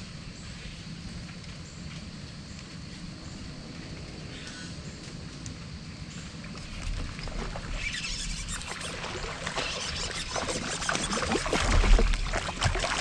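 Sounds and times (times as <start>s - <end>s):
water splashing at a kayak: 6.6s - 13.0s.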